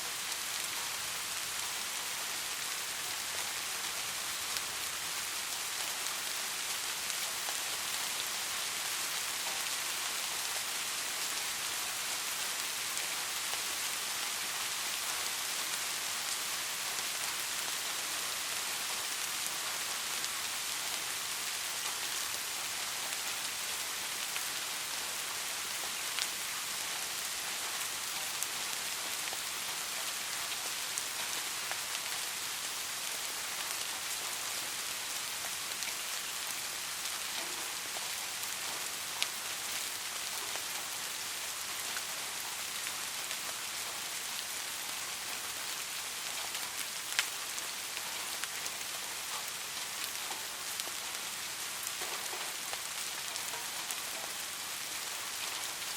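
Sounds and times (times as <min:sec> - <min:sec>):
light rain pattering: 0:00.0 - 0:55.9.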